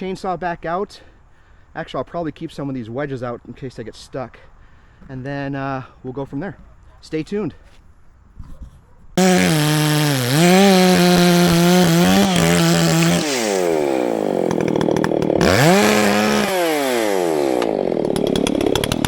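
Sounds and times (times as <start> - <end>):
chainsaw revving: 9.2 - 19.0.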